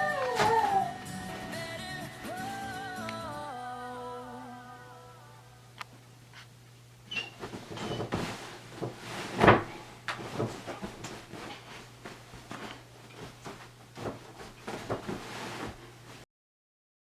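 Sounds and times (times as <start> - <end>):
knocks and scuffling clatters: 0.0 - 1.5, 7.1 - 16.2
high squeak: 7.1 - 8.1.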